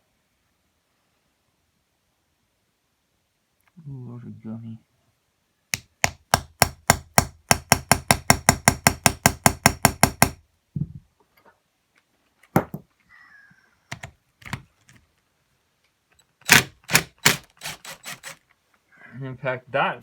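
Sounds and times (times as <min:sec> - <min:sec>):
rapid hammer taps on metal: 0:05.7 - 0:10.4.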